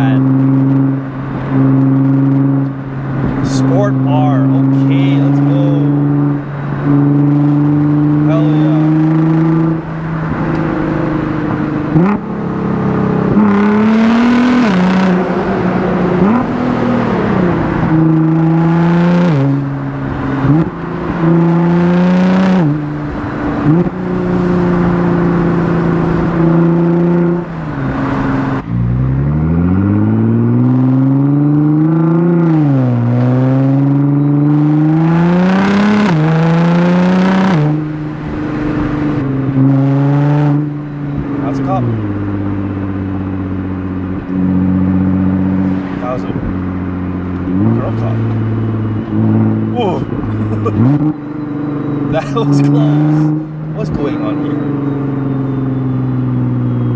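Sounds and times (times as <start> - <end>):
car engine accelerating through gears: 0.0 - 56.9.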